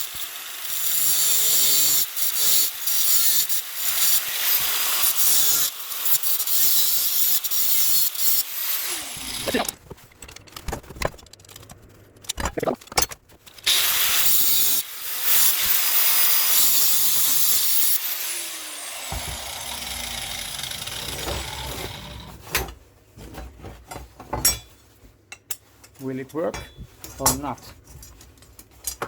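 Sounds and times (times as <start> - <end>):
angle grinder grinding steel: 0.0 - 9.8, 13.6 - 22.4
metal parts knocking: 9.4 - 13.4.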